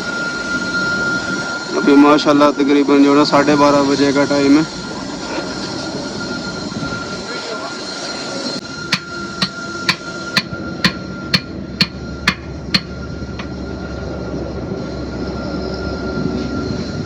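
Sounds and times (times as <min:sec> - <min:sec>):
faint high whine: 0:00.0 - 0:17.0
hammer strikes: 0:08.9 - 0:13.5.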